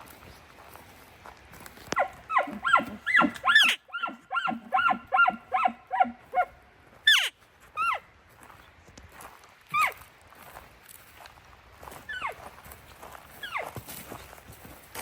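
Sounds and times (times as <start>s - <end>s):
elk call bugle squeals: 2.0s - 6.4s, 7.1s - 8.0s.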